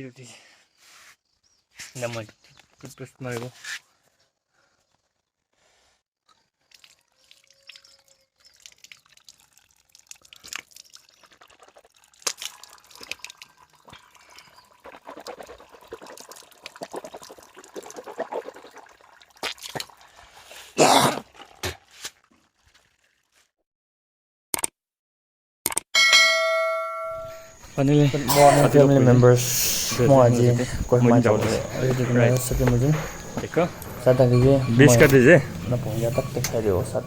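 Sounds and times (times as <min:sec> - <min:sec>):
water splashing and dripping: 0:06.6 - 0:23.4.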